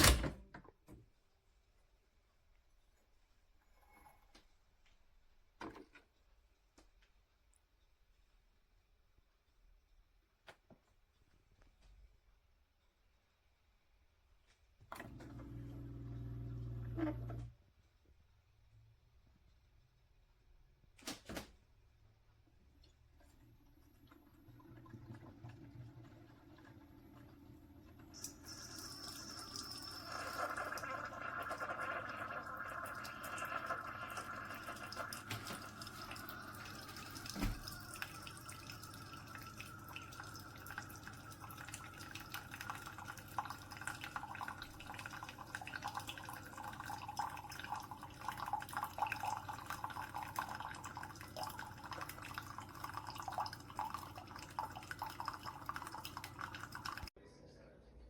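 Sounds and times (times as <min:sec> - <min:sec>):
coffee dripping into a mug: 0:24.0 - 0:57.1.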